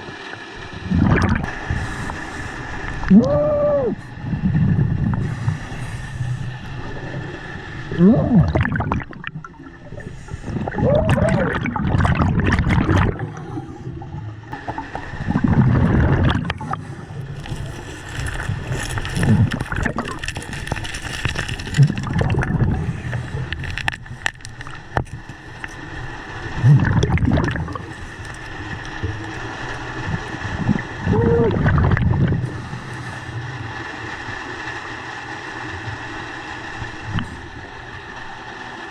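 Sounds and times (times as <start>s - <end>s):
gurgling rush of bubbles: 0.0s - 38.9s
diver breathing through regulator: 1.4s - 3.0s, 4.0s - 7.3s, 9.9s - 11.5s, 13.1s - 14.2s, 32.2s - 33.7s.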